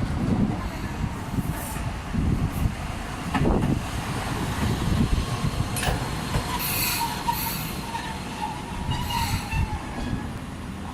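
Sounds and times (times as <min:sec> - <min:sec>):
tram rumbling on rails: 0:00.0 - 0:10.9
wheels squealing: 0:06.5 - 0:10.3.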